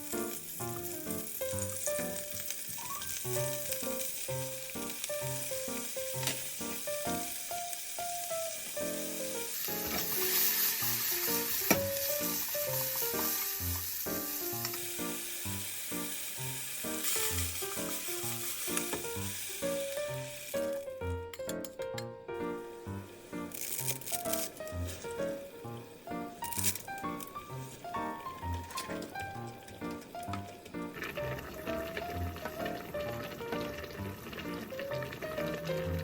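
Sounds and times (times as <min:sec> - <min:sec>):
food sizzling in oil: 0:00.0 - 0:21.6, 0:22.3 - 0:36.0
light background music: 0:00.0 - 0:36.0.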